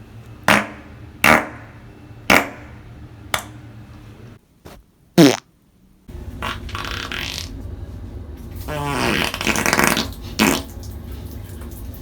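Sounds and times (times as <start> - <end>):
person farting: 5.2 - 5.5, 6.4 - 7.6, 8.7 - 10.7.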